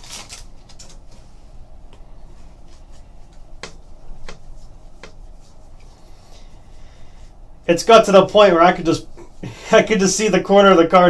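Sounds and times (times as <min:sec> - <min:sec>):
cards and wrappers handled: 0:00.0 - 0:01.2.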